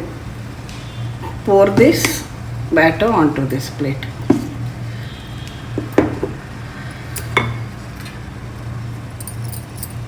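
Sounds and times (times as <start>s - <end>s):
utensils clinking on bowl and plate: 7.1s - 8.1s.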